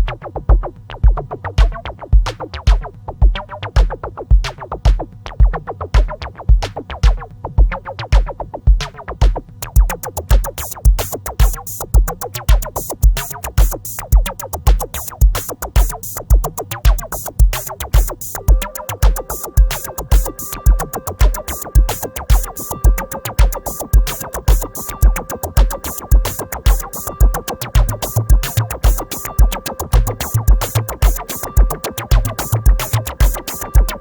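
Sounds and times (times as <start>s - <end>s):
drum machine beat: 0.0s - 34.0s
fast hi-hats: 0.0s - 34.0s
synth line: 18.3s - 34.0s.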